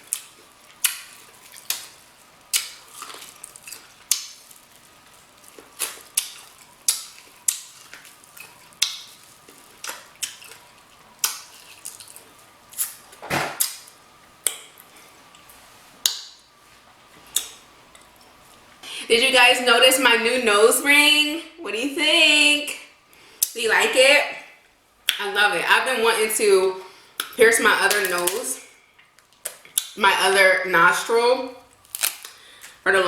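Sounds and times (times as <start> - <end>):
wet chewing clicks and smacks: 0.0 - 4.8, 5.4 - 13.0, 17.3 - 18.1, 29.0 - 30.0.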